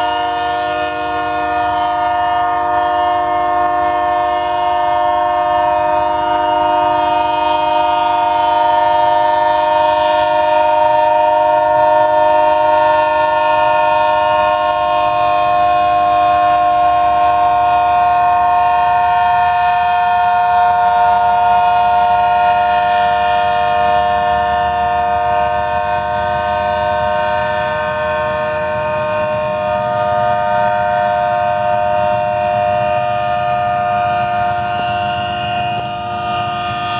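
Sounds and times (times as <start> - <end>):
locomotive air horn chord: 0.0 - 36.9
low rumble of passing train: 0.0 - 36.9.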